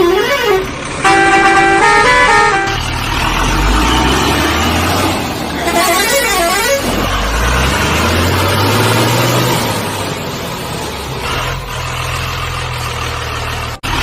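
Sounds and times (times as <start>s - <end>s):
horn-like tone: 0.0s - 2.9s
truck engine rumble: 0.0s - 14.0s.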